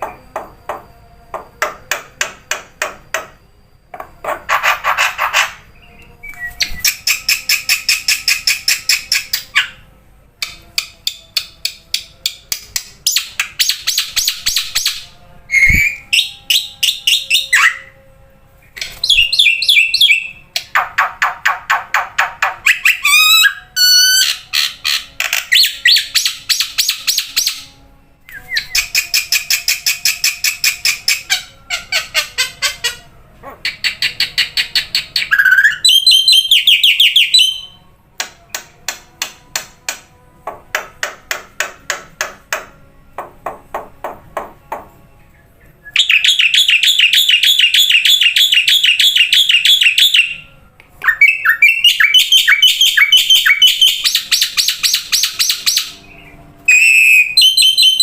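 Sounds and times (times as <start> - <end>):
bird harsh repeated calls: 4.2 - 5.7.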